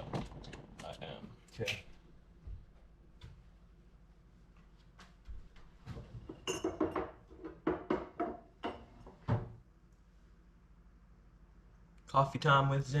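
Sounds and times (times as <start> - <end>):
dishware clinking: 6.4 - 7.2.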